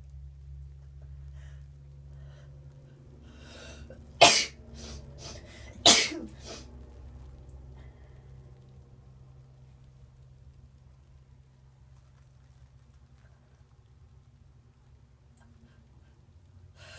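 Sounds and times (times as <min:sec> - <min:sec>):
in-breaths: 0:01.2 - 0:04.0, 0:04.7 - 0:05.8, 0:07.7 - 0:08.6, 0:15.6 - 0:16.9
woman sneezing: 0:04.2 - 0:06.6.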